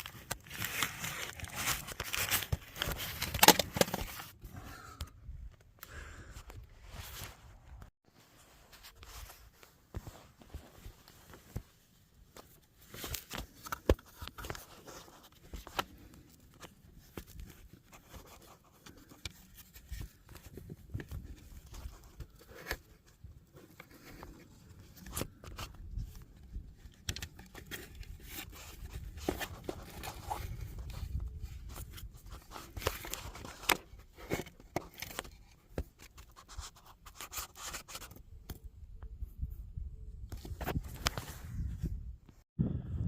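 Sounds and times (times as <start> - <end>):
low wind rumble: 41.4 - 43.0.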